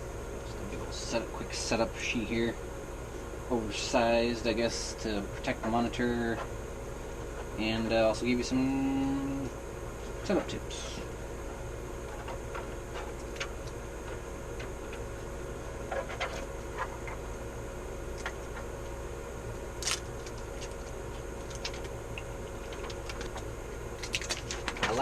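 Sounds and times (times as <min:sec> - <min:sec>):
steady background hum: 0:00.0 - 0:25.0
packaging clicks and rustles: 0:22.6 - 0:25.0.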